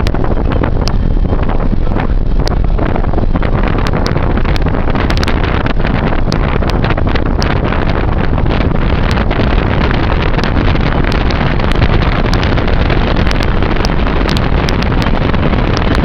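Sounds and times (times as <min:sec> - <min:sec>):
steady road noise: 0:00.0 - 0:16.0
wind buffeting microphone: 0:00.0 - 0:16.0.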